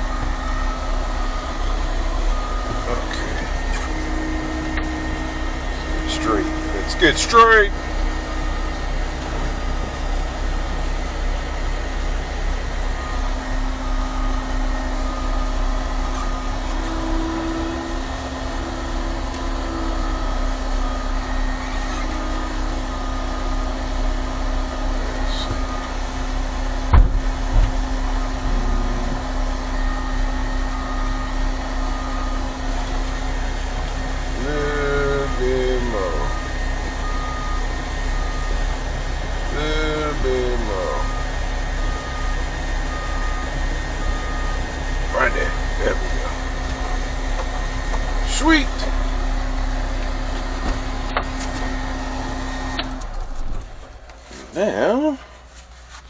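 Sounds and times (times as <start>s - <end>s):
diesel engine running: 0.0s - 56.0s
sharp knock: 26.9s - 27.8s.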